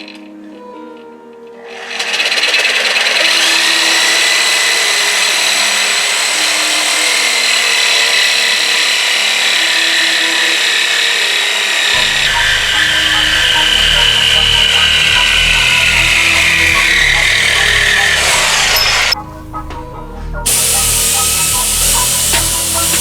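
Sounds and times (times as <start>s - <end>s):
background music: 0.0s - 23.0s
power tool cutting metal: 1.6s - 19.8s, 20.4s - 23.0s.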